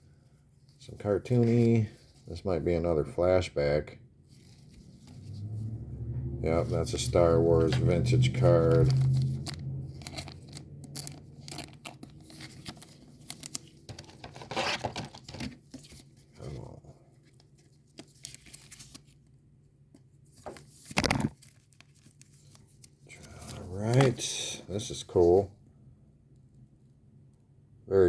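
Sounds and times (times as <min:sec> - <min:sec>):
cards rustling and clicking: 0:06.7 - 0:16.6, 0:17.2 - 0:19.3, 0:19.9 - 0:25.3.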